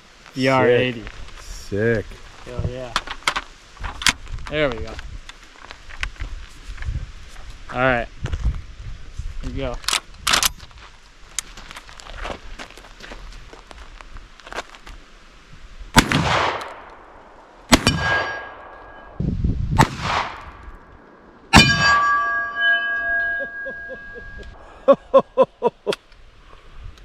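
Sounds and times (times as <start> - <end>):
shotgun shots: 16.0 - 17.1, 17.7 - 19.1, 19.8 - 20.8
metallic ringing: 17.8 - 19.2, 21.5 - 24.6.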